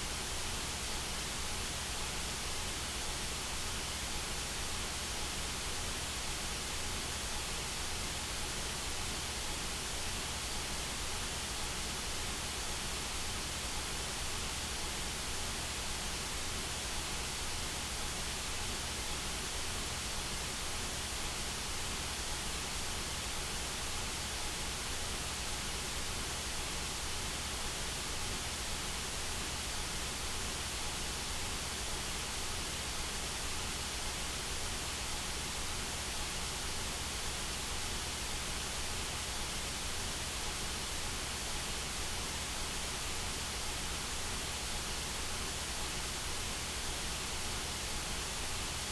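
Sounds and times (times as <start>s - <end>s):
white noise hiss: 0.0s - 48.9s.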